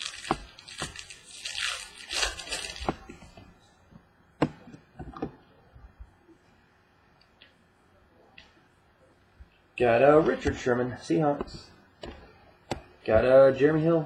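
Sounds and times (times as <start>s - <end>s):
cards tapping and clicking: 0.0s - 1.1s, 11.4s - 13.0s
wrapper crinkling and tearing: 0.0s - 3.1s.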